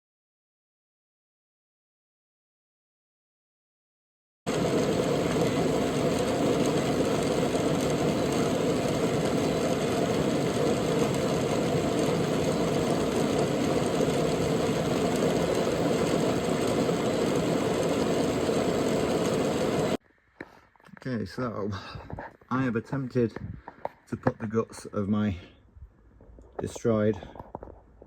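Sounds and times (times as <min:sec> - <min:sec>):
drone motors humming: 0:04.5 - 0:20.0.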